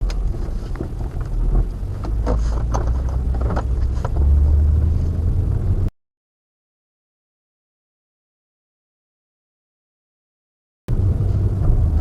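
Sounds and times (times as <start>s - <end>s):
knocks and rattles: 0.0s - 4.3s
car road and engine rumble: 0.0s - 5.9s, 10.9s - 12.0s.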